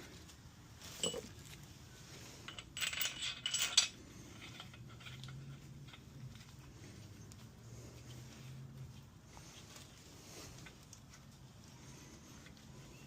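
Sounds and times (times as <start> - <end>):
metal parts clinking: 2.4 - 6.4.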